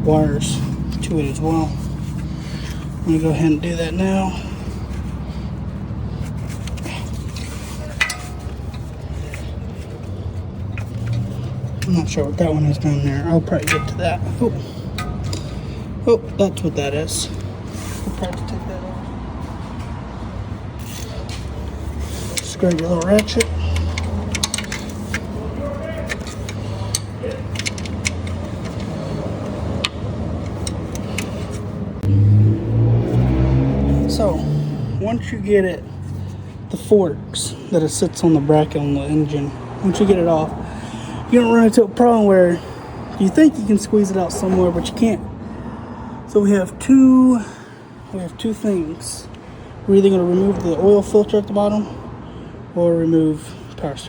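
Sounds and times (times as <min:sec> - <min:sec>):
steady low hum: 0:00.0 - 0:39.6
connectors clicking and rattling: 0:00.4 - 0:32.1.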